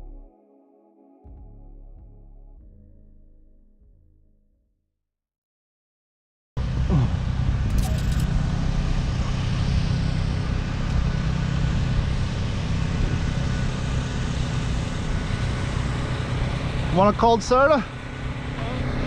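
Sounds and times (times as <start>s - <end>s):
engine rumbling: 6.6s - 19.0s
short click: 7.7s - 8.3s.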